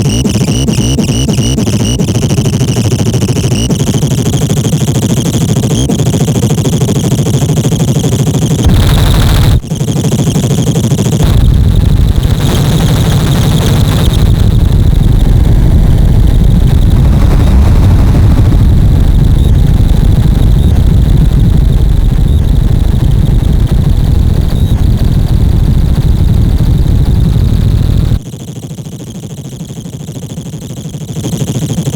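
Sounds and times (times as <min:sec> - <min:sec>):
steady high whine: 0:00.0 - 0:28.2
guitar pedal feedback buzz: 0:11.2 - 0:25.6.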